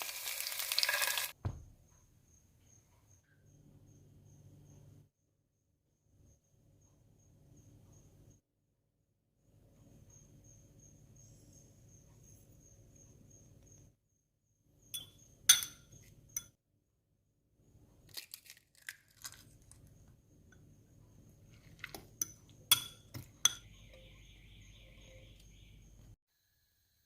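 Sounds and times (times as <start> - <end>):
utensils clinking on glass bowl: 15.0 - 16.5, 21.8 - 23.8.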